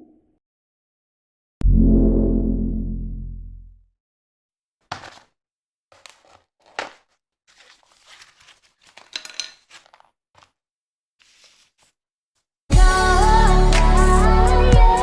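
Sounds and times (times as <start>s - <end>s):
packaging crinkling and tearing: 4.9s - 5.3s, 5.9s - 10.6s, 11.2s - 11.9s.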